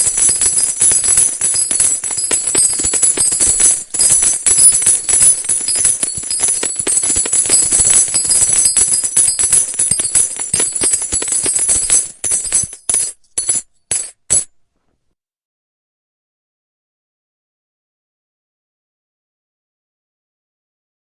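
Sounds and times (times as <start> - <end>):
metal coins pouring and clinking: 0.0 - 14.5.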